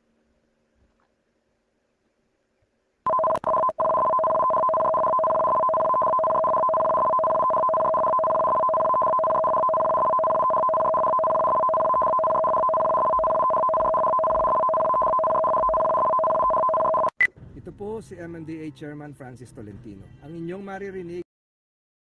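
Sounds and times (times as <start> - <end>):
two-tone emergency alert tone: 3.1 - 17.3.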